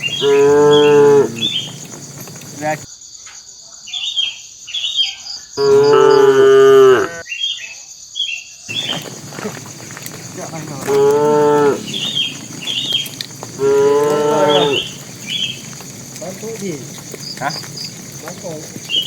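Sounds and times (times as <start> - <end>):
cattle mooing: 0.0 - 2.8, 5.6 - 7.2, 8.7 - 19.0.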